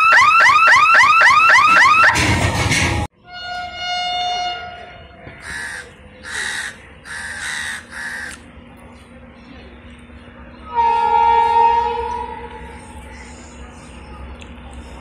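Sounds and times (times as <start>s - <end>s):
locomotive horn: 3.1s - 5.3s, 10.6s - 13.0s
crow cawing: 5.4s - 8.4s.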